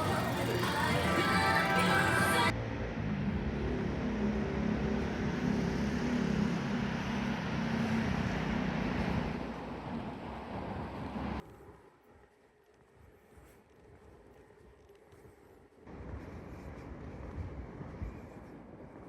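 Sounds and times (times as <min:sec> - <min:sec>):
street traffic engine hum: 0:00.0 - 0:11.4.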